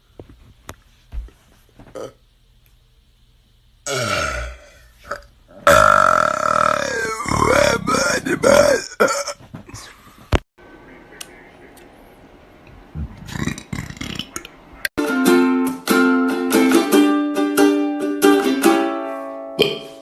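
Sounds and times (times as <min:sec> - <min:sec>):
low burp: 0:01.9 - 0:02.2, 0:03.8 - 0:09.3, 0:19.6 - 0:20.0
plucked-string music: 0:15.0 - 0:20.0.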